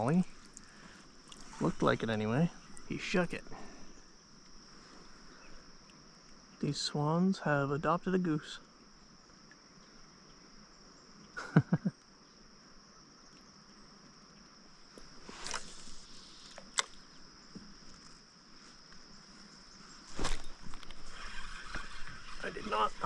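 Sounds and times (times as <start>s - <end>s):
insects chirring: 0.0s - 23.0s.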